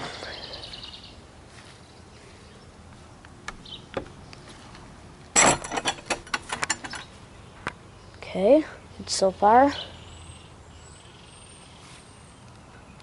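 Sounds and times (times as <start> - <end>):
panel knocking and rattling: 5.4 - 7.0.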